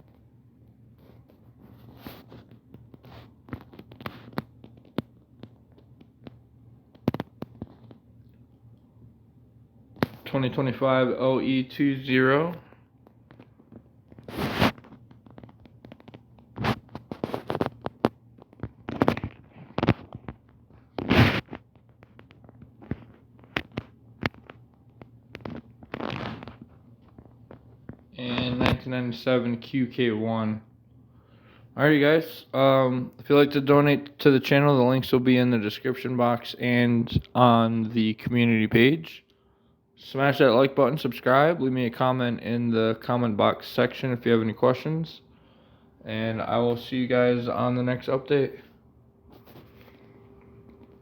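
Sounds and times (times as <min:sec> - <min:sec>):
soft rustling: 0:00.0 - 0:08.2, 0:12.5 - 0:29.0, 0:46.3 - 0:51.0.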